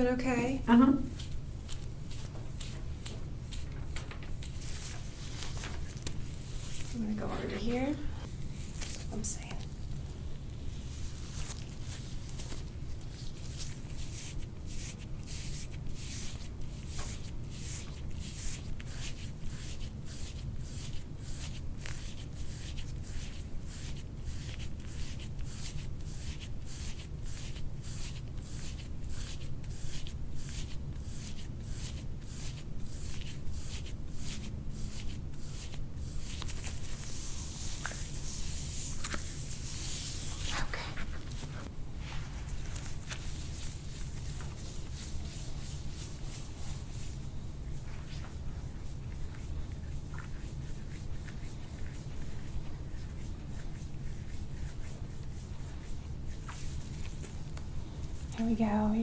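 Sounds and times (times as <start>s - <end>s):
hands rubbing over skin: 10.8s - 57.5s.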